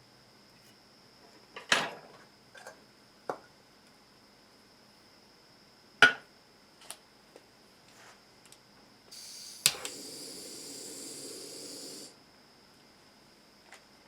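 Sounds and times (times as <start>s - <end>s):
torch flame hissing: 9.1s - 12.2s
igniter click: 9.2s - 10.0s.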